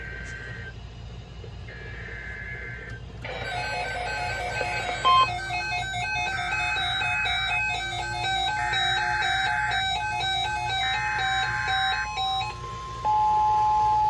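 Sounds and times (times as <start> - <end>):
electronic alarm of alternating tones: 1.7 - 14.0
on-off data tones: 3.3 - 14.0.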